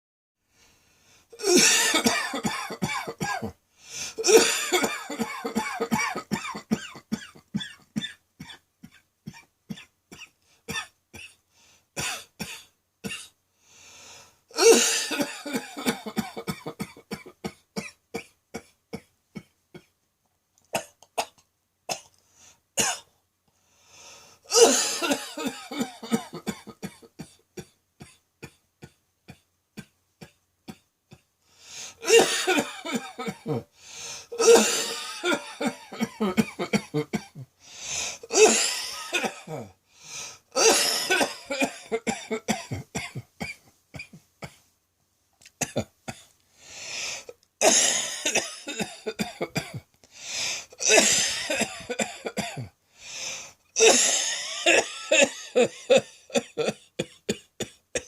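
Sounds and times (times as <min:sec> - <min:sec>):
person coughing: 0:01.4 - 0:03.6, 0:04.2 - 0:11.4, 0:14.6 - 0:18.8, 0:22.8 - 0:23.1, 0:24.5 - 0:31.3, 0:31.9 - 0:33.7, 0:34.3 - 0:37.5, 0:38.2 - 0:39.8, 0:40.6 - 0:44.6, 0:47.6 - 0:49.9, 0:50.8 - 0:52.8, 0:53.8 - 0:58.0
quick in-breaths: 0:33.7 - 0:34.3, 0:50.1 - 0:50.7, 0:52.9 - 0:53.6.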